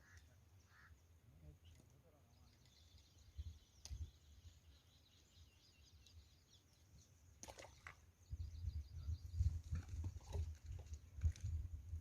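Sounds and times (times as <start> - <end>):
birds chirping: 0.0 - 10.3
wind rumble on microphone: 8.2 - 12.0.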